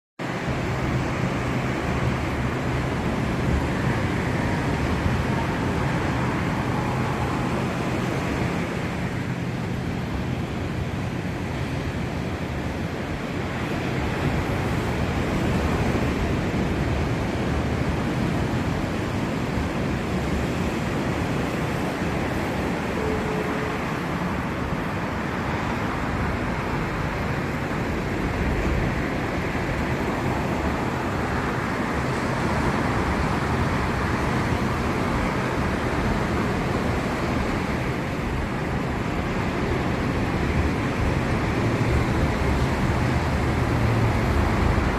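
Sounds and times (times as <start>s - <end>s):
ocean surf roaring: 0.2s - 44.9s
wind buffeting microphone: 0.2s - 44.9s.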